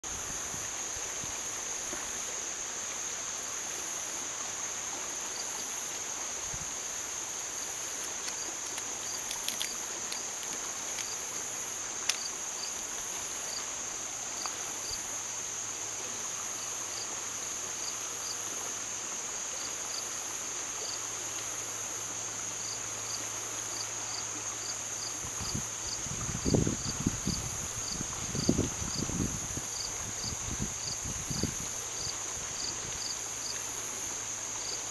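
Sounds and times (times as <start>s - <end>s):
crickets trilling: 0.0s - 34.9s
stream flowing: 0.0s - 34.9s.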